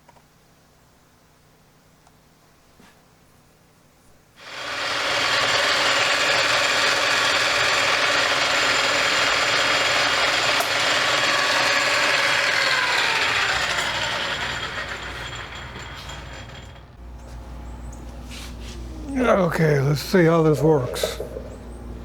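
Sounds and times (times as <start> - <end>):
electric drill boring metal: 4.4 - 17.0.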